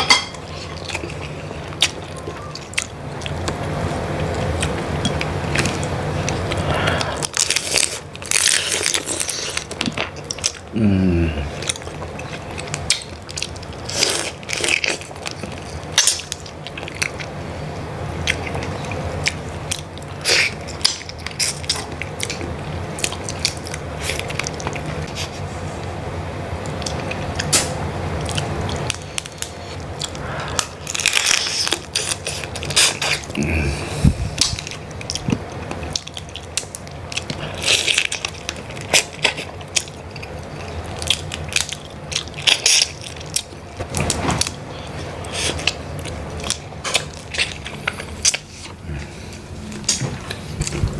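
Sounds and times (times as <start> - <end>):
shells crunching and cracking: 0.0 - 10.7, 28.7 - 33.3, 34.4 - 44.6
steady low hum: 0.0 - 50.9
wet chewing: 0.4 - 10.8, 11.5 - 17.4, 18.2 - 25.5, 26.6 - 50.9.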